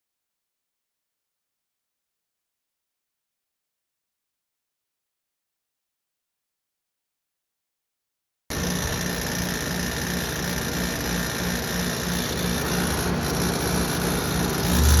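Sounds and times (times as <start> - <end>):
air conditioner fan rushing: 8.5 - 15.0
low throbbing hum: 12.6 - 15.0.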